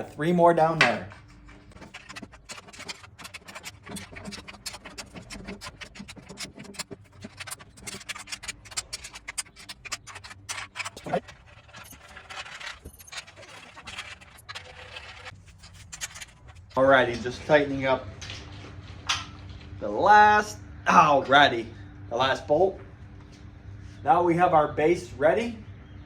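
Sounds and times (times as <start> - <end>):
small metal clicks and scrapes: 0.0 - 17.5.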